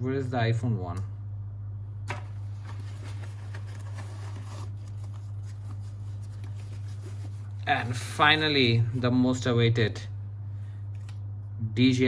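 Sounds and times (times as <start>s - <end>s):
steady low hum: 0.0s - 12.0s
packaging rustling: 2.1s - 9.0s.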